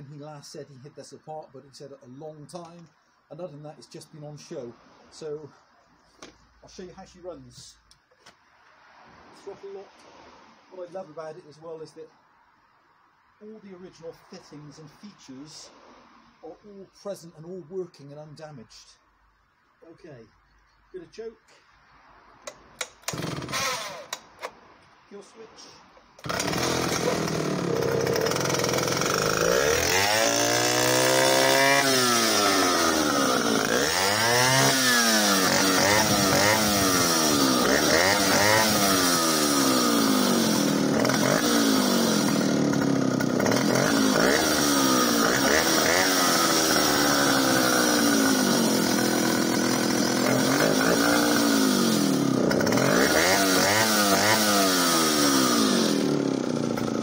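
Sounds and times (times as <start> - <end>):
chainsaw engine revving: 22.5 - 24.3, 26.2 - 57.0.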